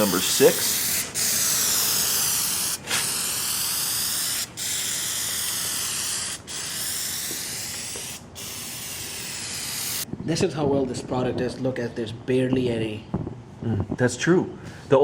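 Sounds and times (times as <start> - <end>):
aerosol can spraying: 0.0 - 10.1.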